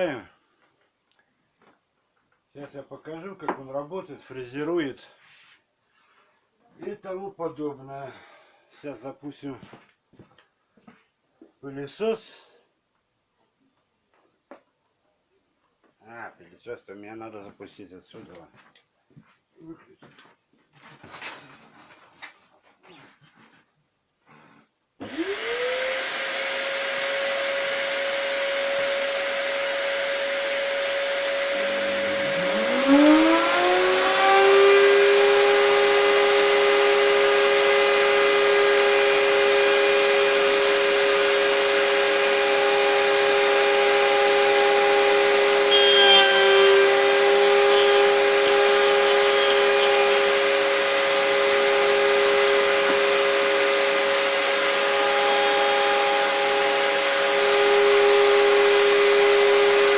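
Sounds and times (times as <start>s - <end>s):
router cutting wood: 25.0s - 59.9s
shop vacuum motor whining: 25.0s - 59.9s
router spinning: 29.6s - 55.1s.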